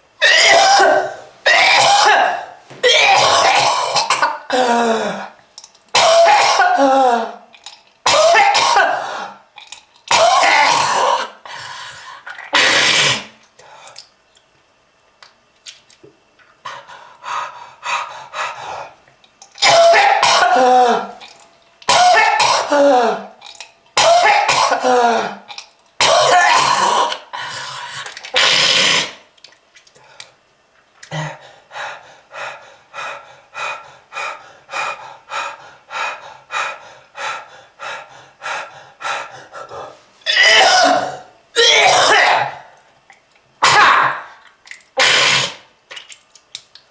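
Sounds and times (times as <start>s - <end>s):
harsh hacking cough: 0.2s - 4.8s, 5.9s - 7.1s, 8.1s - 9.1s, 10.1s - 11.4s, 12.5s - 13.3s, 19.6s - 21.1s, 21.9s - 23.0s, 24.0s - 25.4s, 26.0s - 27.2s, 40.3s - 42.7s, 43.6s - 44.1s.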